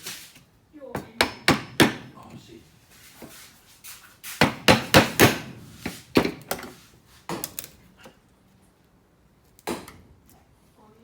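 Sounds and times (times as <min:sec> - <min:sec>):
tool knocking on workpiece: 0:01.0 - 0:02.1, 0:04.4 - 0:06.6.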